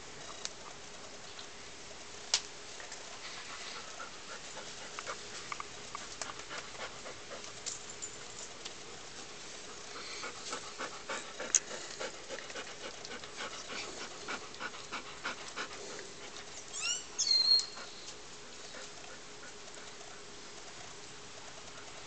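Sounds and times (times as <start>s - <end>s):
puppies panting: 3.4s - 7.6s, 9.6s - 16.7s, 17.7s - 20.7s
high squeaky chirps: 16.7s - 17.8s.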